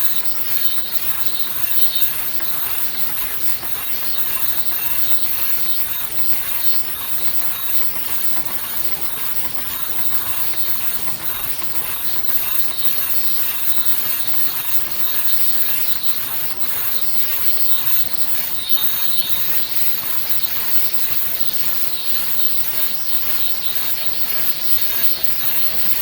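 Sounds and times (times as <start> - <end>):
machines clattering rhythmically: 0.0 - 26.0.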